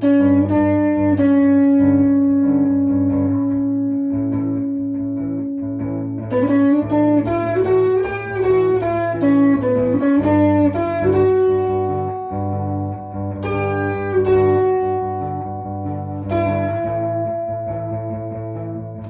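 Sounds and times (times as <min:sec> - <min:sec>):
electric guitar lead playing: 0:00.0 - 0:19.0
steady low note: 0:00.0 - 0:19.0.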